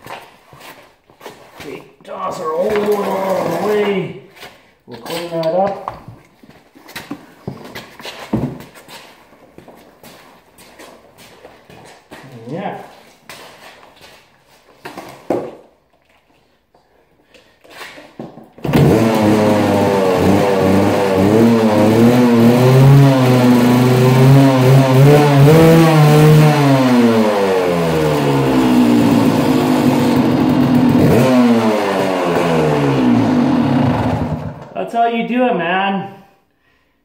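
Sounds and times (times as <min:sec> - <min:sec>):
two-stroke engine revving: 0:02.7 - 0:03.8, 0:18.6 - 0:34.8.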